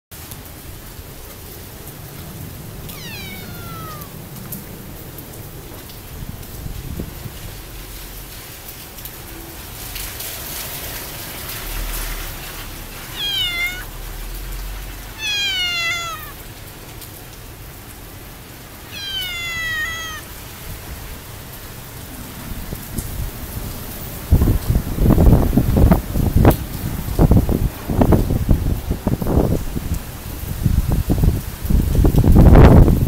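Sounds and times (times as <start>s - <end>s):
heavy rain hissing: 0.2s - 33.0s
cat meowing: 2.9s - 4.2s, 13.1s - 14.0s, 15.1s - 16.5s, 18.8s - 20.4s.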